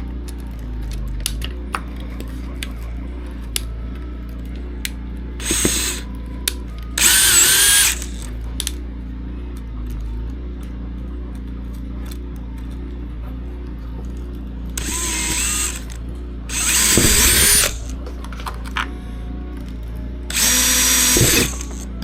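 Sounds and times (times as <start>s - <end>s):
steady low hum: 0.0s - 22.0s
drill whining through plastic: 5.4s - 6.1s, 7.0s - 8.3s, 14.8s - 18.0s, 20.3s - 22.0s.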